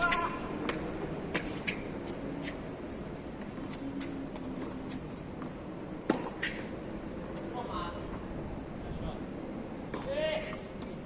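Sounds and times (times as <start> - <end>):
steady background hiss: 0.0 - 11.0
racket hitting tennis ball: 4.6 - 6.7.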